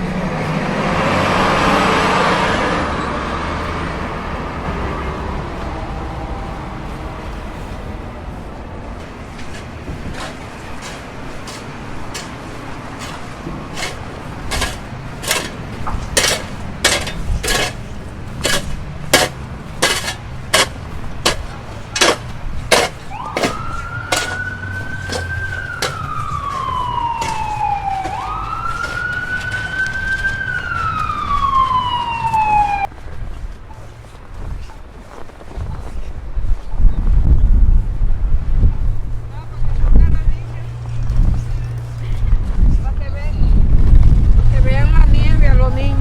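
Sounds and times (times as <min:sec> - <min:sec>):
emergency vehicle siren wailing: 0:00.1 - 0:08.8, 0:21.9 - 0:32.9
footsteps on snow: 0:03.6 - 0:42.7.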